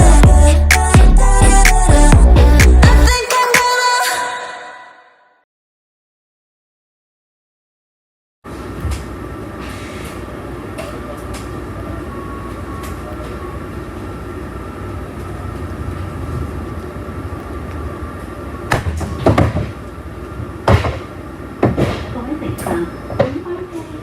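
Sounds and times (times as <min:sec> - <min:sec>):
bus cabin rumble: 0:08.5 - 0:24.0
loud clunks: 0:18.7 - 0:19.8, 0:20.6 - 0:23.4.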